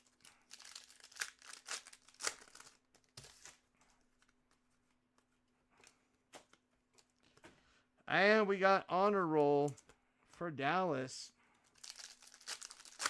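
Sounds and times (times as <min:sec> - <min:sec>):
foil wrapper crinkling and tearing: 0:00.0 - 0:04.4, 0:11.6 - 0:13.0.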